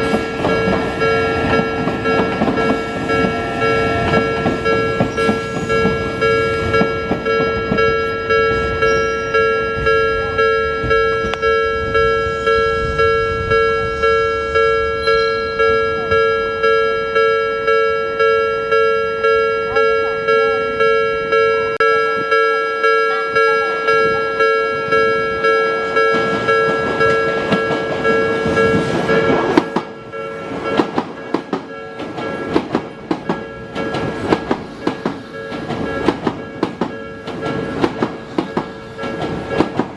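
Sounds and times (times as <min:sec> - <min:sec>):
train wheels clacking over rail joints: 0:00.0 - 0:09.0, 0:25.8 - 0:39.9
level-crossing electronic bell: 0:00.0 - 0:32.6, 0:35.2 - 0:39.8
train rumble: 0:00.0 - 0:39.9.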